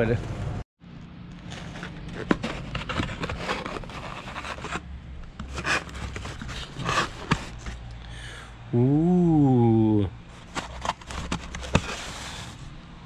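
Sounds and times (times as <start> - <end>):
rustling and scraping of handling: 1.0 - 8.0, 10.2 - 12.8.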